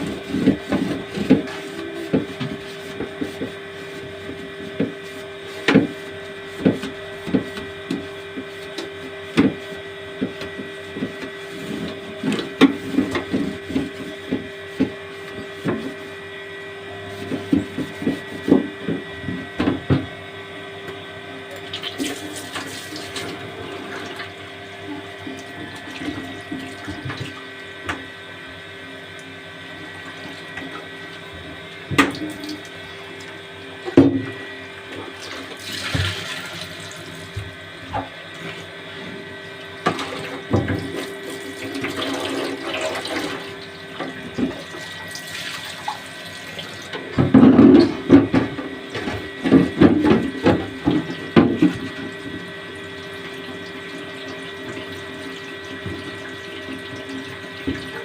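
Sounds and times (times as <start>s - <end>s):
tap water running into sink: 35.2s - 37.4s, 39.8s - 43.4s, 44.4s - 46.8s.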